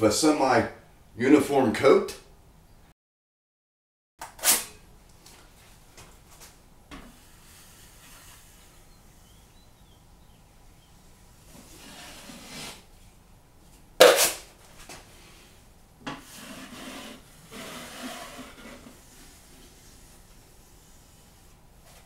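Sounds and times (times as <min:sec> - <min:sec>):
taping knife scraping drywall compound: 0:07.1 - 0:09.3, 0:11.6 - 0:12.9, 0:16.2 - 0:22.0.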